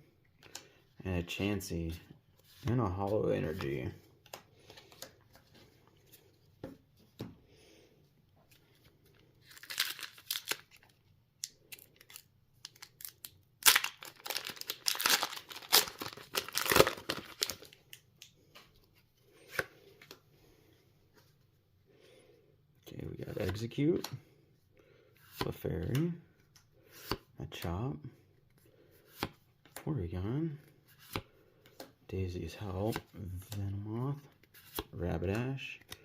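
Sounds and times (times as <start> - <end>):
foil wrapper tearing and crinkling: 9.5 - 10.8, 11.8 - 17.7.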